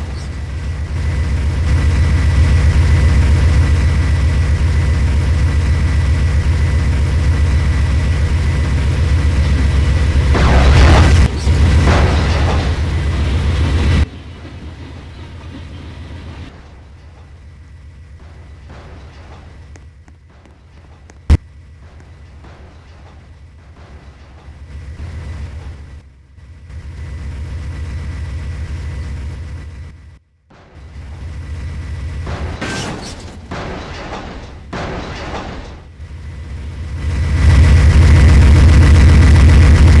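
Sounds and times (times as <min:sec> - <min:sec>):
train rumbling: 0:00.0 - 0:40.0.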